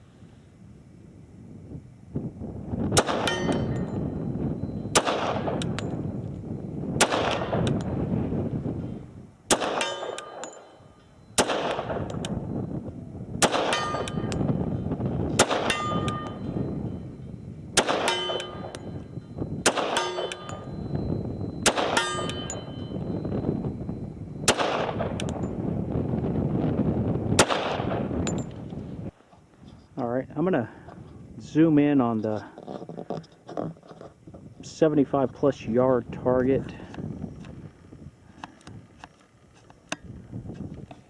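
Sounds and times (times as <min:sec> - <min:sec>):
metallic ringing: 0:03.1 - 0:06.8, 0:08.7 - 0:25.8, 0:28.2 - 0:28.7
pistol shots echoing: 0:04.9 - 0:05.7, 0:07.0 - 0:07.8, 0:09.5 - 0:10.8, 0:11.4 - 0:12.3, 0:13.4 - 0:14.4, 0:15.4 - 0:16.5, 0:17.8 - 0:18.9, 0:19.6 - 0:20.7, 0:21.6 - 0:22.8, 0:24.5 - 0:25.3, 0:27.4 - 0:28.1.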